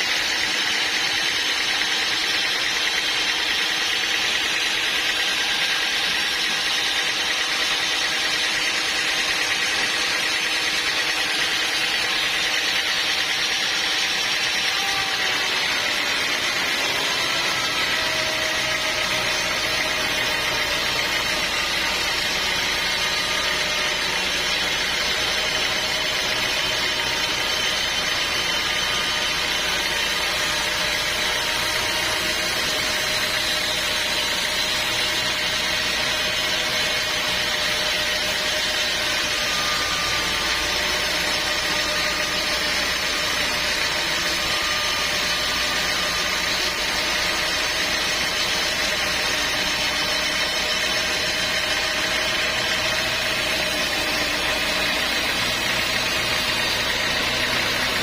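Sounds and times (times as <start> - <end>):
sawmill machinery drone: 0.0 - 58.0
whining machine tones: 0.0 - 58.0.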